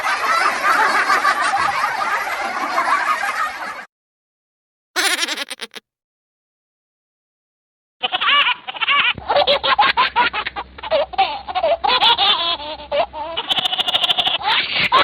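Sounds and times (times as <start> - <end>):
high-pitched pulsing laughter: 0.0 - 3.9, 5.0 - 5.8, 8.0 - 15.0.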